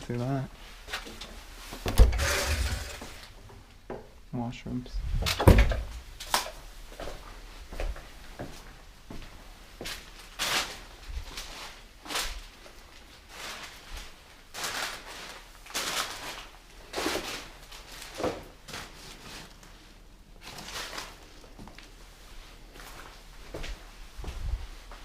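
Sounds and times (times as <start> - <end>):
footsteps crunching over debris: 6.2 - 25.0.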